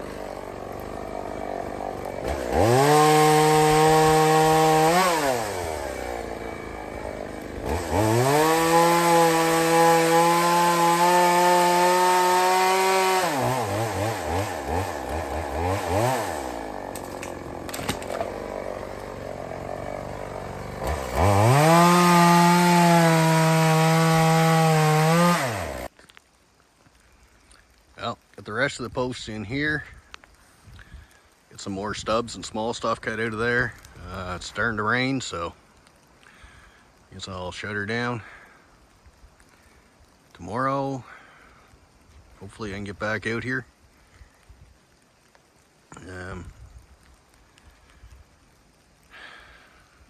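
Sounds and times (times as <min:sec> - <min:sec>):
chainsaw revving and idling: 0:00.0 - 0:25.9.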